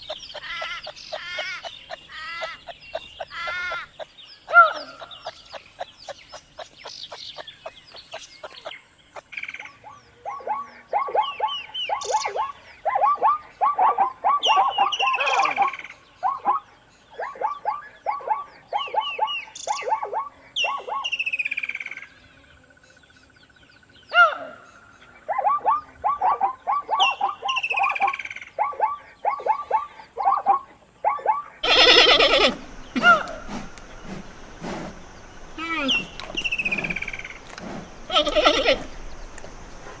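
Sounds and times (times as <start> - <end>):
loud harsh animal call: 25.5 - 40.0
quick repeated chirping: 31.1 - 40.0.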